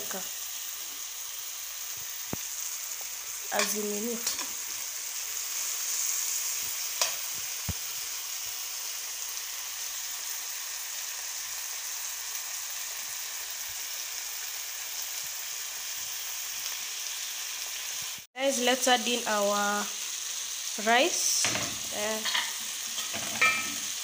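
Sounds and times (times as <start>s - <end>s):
vegetables sizzling in a pan: 0.0s - 24.0s.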